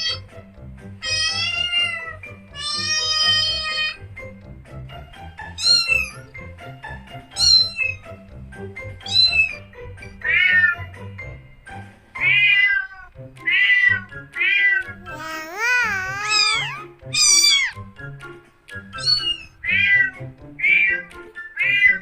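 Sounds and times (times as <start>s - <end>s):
cat meowing: 0.0s - 0.2s, 1.0s - 4.0s, 5.6s - 6.2s, 7.4s - 8.0s, 9.1s - 9.6s, 10.2s - 10.9s, 12.2s - 17.8s, 19.0s - 22.0s
background music: 0.0s - 22.0s.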